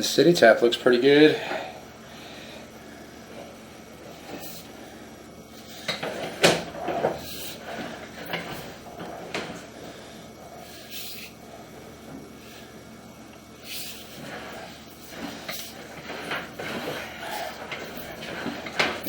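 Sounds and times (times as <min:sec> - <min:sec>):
equipment knocks and scrapes: 0:05.8 - 0:09.6, 0:14.1 - 0:19.0.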